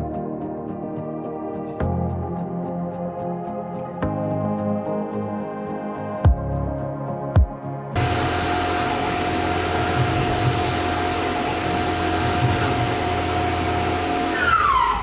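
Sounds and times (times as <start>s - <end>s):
milling machine cutting: 8.0s - 15.0s
spindle whine dropping in pitch: 8.0s - 15.0s.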